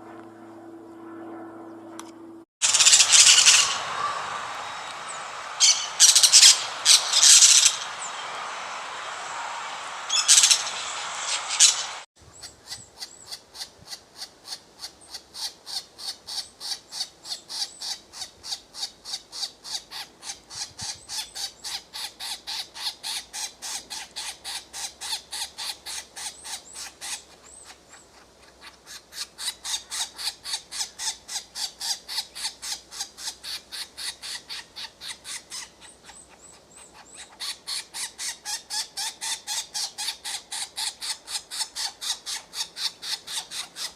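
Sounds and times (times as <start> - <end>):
bird calling short sharp notes: 2.6 - 8.7
harsh bird call: 2.6 - 12.1.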